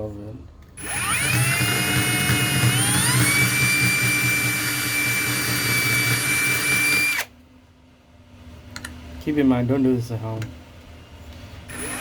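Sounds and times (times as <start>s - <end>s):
power cutting tool whining: 0.8s - 7.3s, 11.7s - 12.0s.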